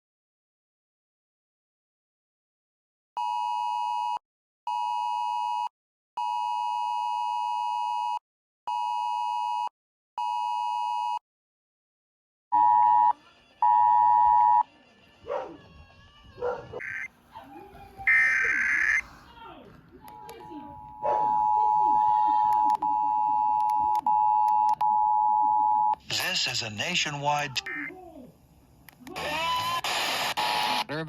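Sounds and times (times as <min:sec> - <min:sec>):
two-tone emergency alert beeping: 0:12.6 - 0:14.6, 0:18.1 - 0:19.0, 0:20.2 - 0:26.0.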